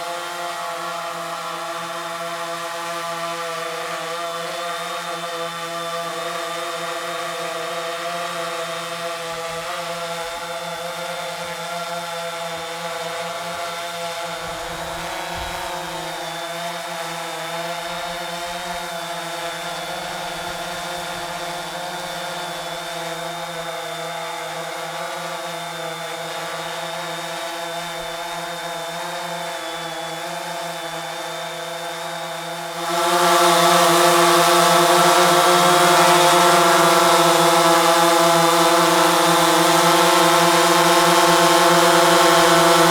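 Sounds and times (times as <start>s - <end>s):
drone motors buzzing: 13.4s - 22.0s.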